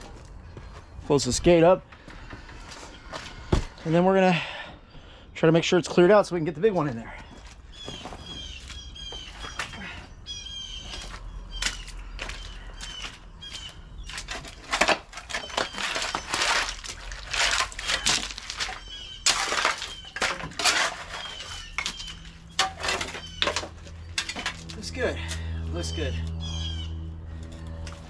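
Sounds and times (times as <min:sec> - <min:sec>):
rustling and knocking of clearing work: 0:10.8 - 0:25.0.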